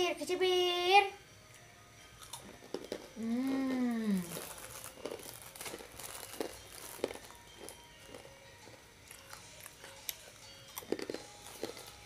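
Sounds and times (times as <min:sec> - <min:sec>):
food packaging crinkling: 0:02.2 - 0:12.0.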